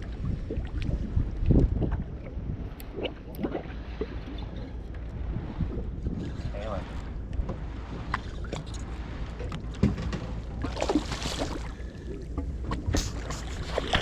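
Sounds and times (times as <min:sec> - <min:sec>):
boat engine hum: 0:00.0 - 0:14.0
knocks and clatter on deck: 0:09.7 - 0:10.4.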